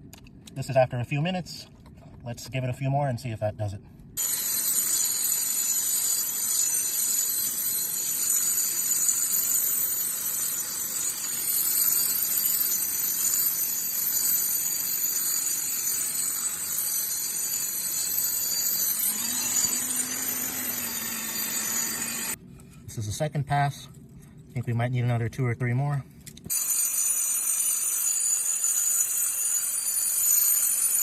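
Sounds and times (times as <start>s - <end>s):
angle grinder grinding concrete: 4.2s - 22.4s.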